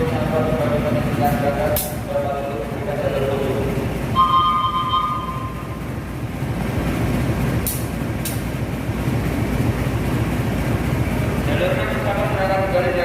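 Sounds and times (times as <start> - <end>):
train rumbling: 0.0 - 13.0
high steady tone: 4.0 - 6.3.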